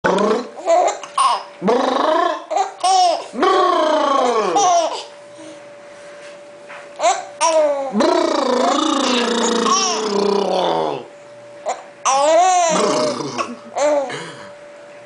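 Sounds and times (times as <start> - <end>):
baby laughing: 0.5 - 1.5, 2.3 - 3.3, 4.2 - 5.1, 7.0 - 7.9, 8.6 - 10.6, 11.7 - 14.1.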